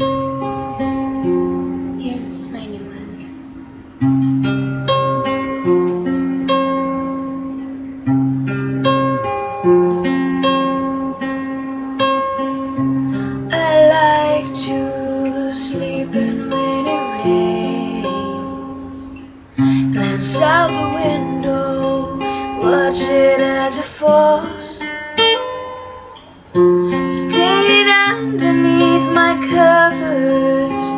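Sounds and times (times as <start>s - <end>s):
acoustic guitar strumming: 0.0s - 30.9s
woman singing: 13.5s - 24.9s, 26.9s - 30.9s.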